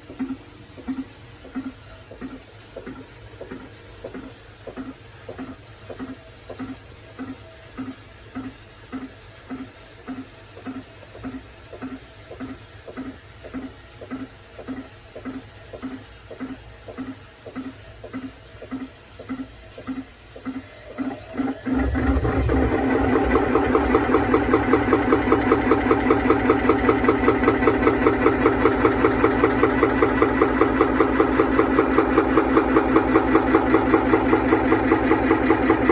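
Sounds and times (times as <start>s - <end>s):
washing machine spinning: 9.6s - 35.9s
motor whine: 20.6s - 35.9s.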